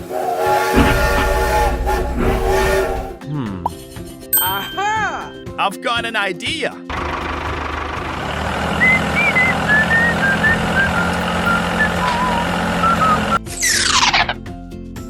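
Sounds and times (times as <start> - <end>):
falling whoosh: 0.0 - 3.2
machine running steadily: 0.0 - 3.2, 10.8 - 13.4.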